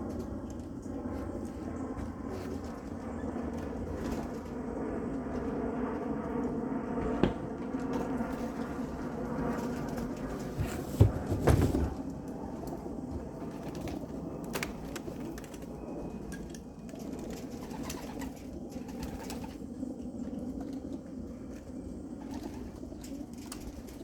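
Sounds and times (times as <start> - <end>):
pigeons cooing: 17.0 - 19.8, 20.7 - 24.0.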